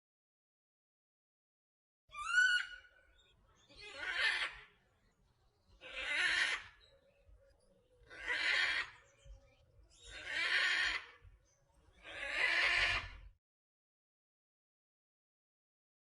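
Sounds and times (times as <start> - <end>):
bird rasping squawks: 8.1 - 9.0, 10.1 - 11.1, 12.0 - 13.2.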